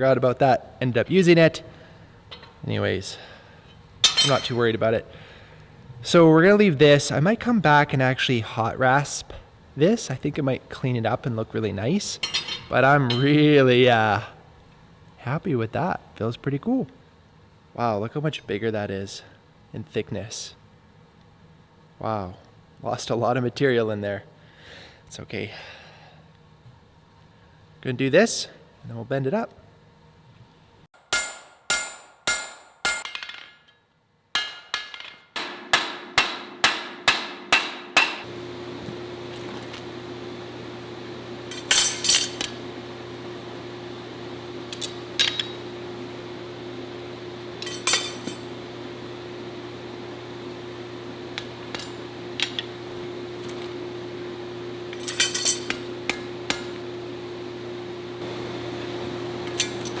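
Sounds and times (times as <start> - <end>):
hammer striking steel on anvil: 4.0 - 4.7, 12.2 - 13.4, 31.0 - 33.5, 34.4 - 38.3, 41.5 - 42.6, 44.8 - 45.7, 47.6 - 48.5, 54.9 - 56.9, 59.5 - 60.0
metal clanking on metal: 4.0 - 4.7, 12.2 - 13.4, 41.5 - 42.5, 47.6 - 48.5, 54.9 - 56.8, 59.5 - 60.0
steady hum: 34.4 - 60.0.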